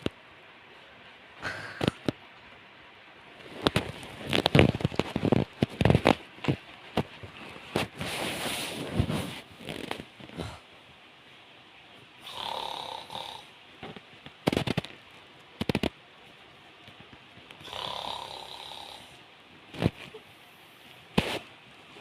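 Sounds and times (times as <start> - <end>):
man snoring heavily: 12.2 - 13.5, 17.6 - 19.2.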